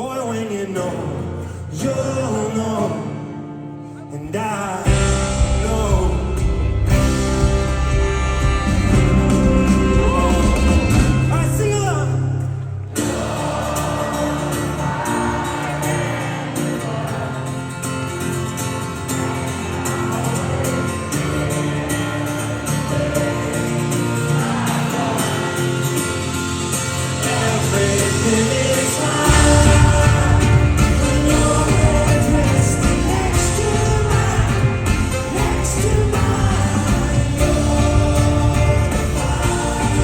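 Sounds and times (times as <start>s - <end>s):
wordless singing: 4.0s - 40.0s
drums and cymbals: 4.9s - 12.1s, 19.2s - 40.0s
live band playing: 4.9s - 40.0s.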